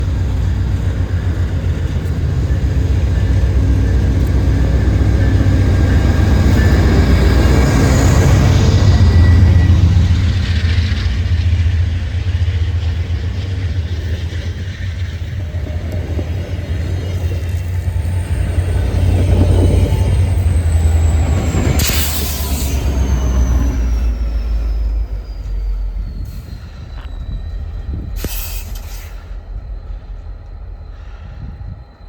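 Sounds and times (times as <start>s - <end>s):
diesel train rumbling: 0.0s - 32.0s
faint high gliding tone: 12.8s - 32.0s
burst of hiss: 28.2s - 29.4s.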